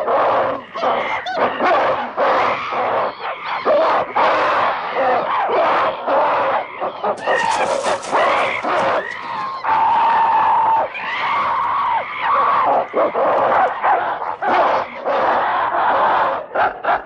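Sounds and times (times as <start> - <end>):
chimpanzees screaming and calling: 0.0 - 17.0.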